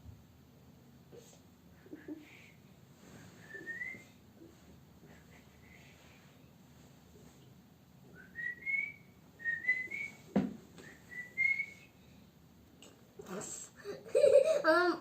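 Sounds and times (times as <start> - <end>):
person whistling: 3.4 - 4.1, 8.2 - 10.2, 10.8 - 11.9.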